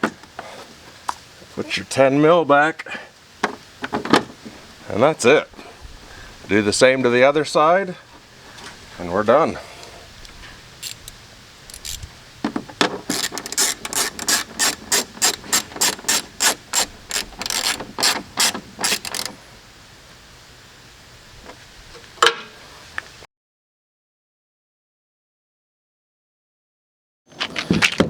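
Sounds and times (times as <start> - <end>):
ratchet wrench clicking: 10.8 - 12.1, 13.1 - 19.4.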